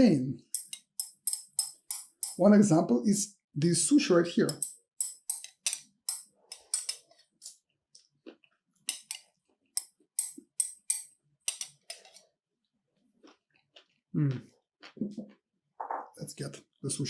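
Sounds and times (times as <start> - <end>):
wet chewing clicks: 8.0 - 9.6, 13.2 - 15.4.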